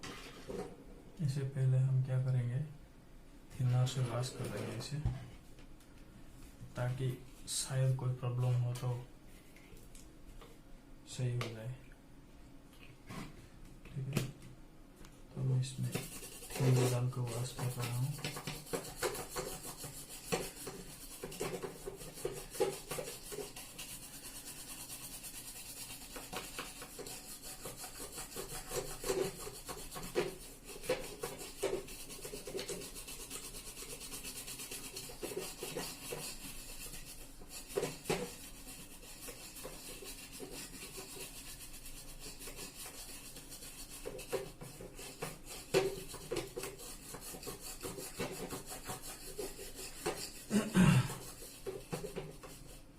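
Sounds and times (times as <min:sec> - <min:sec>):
brush scrubbing circuit board: 0:15.4 - 0:52.9.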